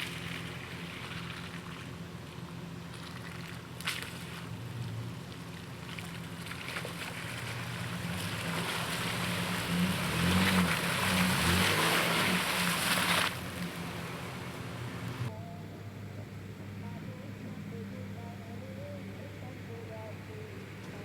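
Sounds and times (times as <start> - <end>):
muddy water splashing: 0.0 - 15.3
truck engine revving: 0.0 - 21.0.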